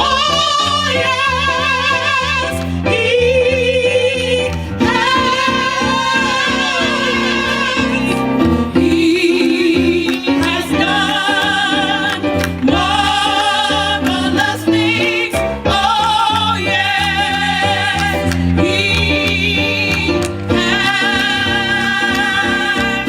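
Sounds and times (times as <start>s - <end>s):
bass line: 0.0s - 23.0s
gospel group singing: 0.0s - 23.0s.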